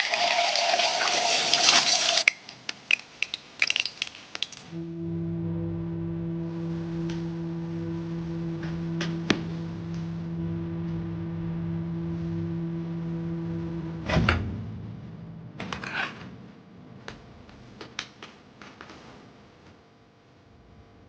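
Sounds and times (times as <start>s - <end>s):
microwave oven humming: 4.8s - 17.1s.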